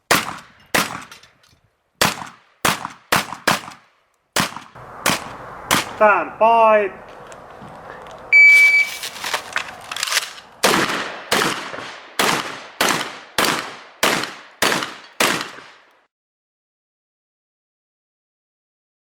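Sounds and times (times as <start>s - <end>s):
shotgun shots: 0.0s - 1.2s, 2.0s - 6.0s, 10.6s - 15.9s.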